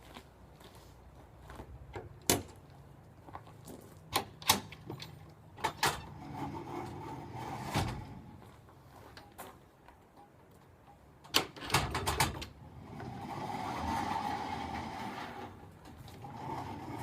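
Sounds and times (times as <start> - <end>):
garage door rubbing: 5.8 - 8.3, 11.6 - 17.0
door latch clicks and knocks: 11.3 - 12.5.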